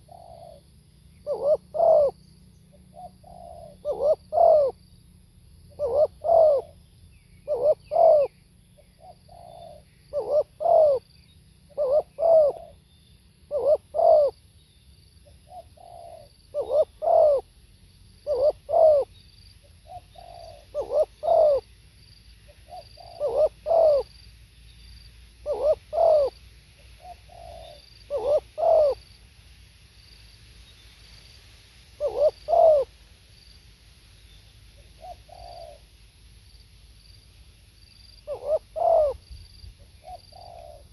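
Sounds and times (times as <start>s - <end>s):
dove cooing: 0.0s - 4.8s, 5.7s - 6.8s, 7.4s - 8.4s, 9.0s - 11.1s, 11.7s - 12.8s, 13.5s - 14.4s, 15.4s - 17.5s, 18.2s - 19.1s, 19.8s - 21.7s, 22.5s - 24.1s, 25.4s - 26.4s, 27.0s - 29.0s, 32.0s - 32.9s, 34.8s - 35.9s, 38.2s - 39.2s, 39.9s - 40.9s.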